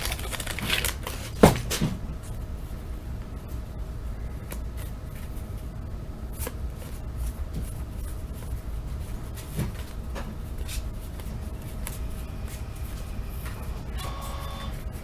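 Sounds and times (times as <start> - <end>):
cards clicking and rustling: 0.0 - 1.8
low steady hum: 0.0 - 15.0.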